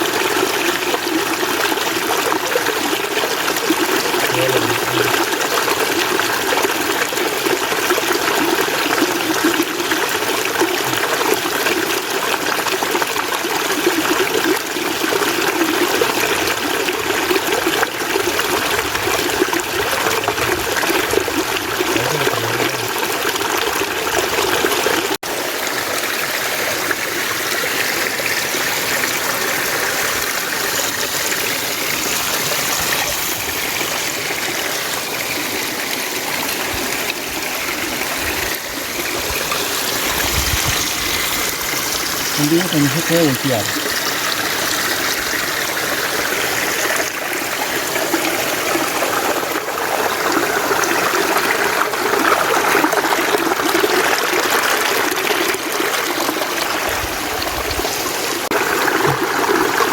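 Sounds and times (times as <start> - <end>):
stream water running: 0.0 - 59.9.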